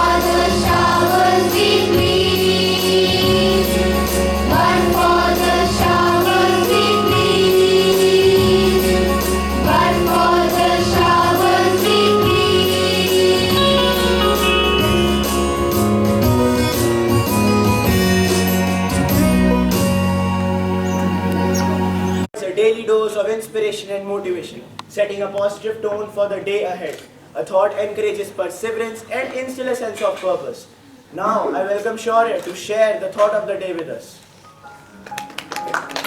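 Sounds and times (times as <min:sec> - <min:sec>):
group of voices singing: 0:00.0 - 0:14.6
instrumental accompaniment with bass: 0:00.0 - 0:22.3.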